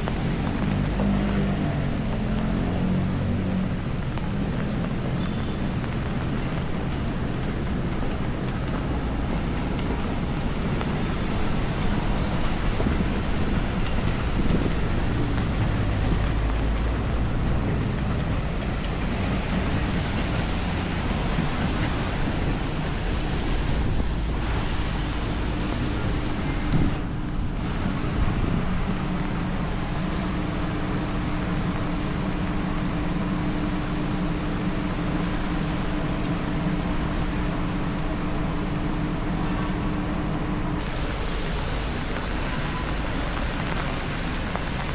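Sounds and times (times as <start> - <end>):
rain: 0.0 - 44.9
traffic rumble: 0.0 - 44.9
wind buffeting the microphone: 3.7 - 33.8.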